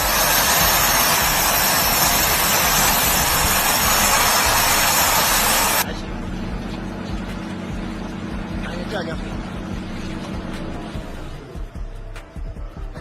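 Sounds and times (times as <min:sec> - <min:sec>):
loud rushing hiss: 0:00.0 - 0:05.9.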